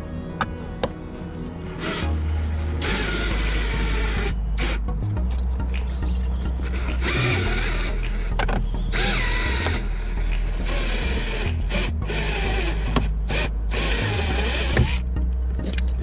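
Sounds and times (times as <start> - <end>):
small power tool whining: 1.6 - 15.0.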